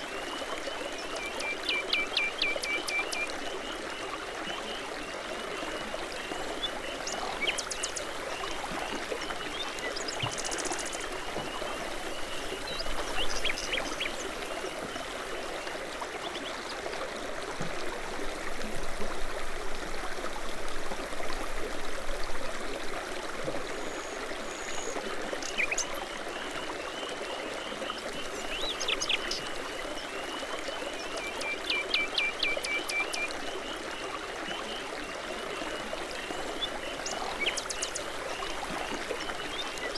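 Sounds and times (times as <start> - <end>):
brook water burbling: 0.0 - 39.9.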